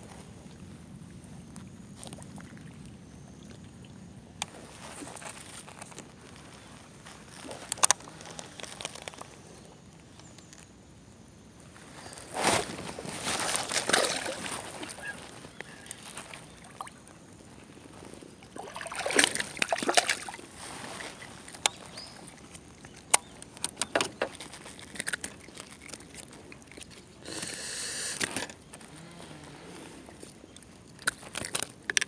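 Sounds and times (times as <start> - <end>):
water sloshing and splashing: 12.8 - 27.2
rushing water: 18.5 - 22.5.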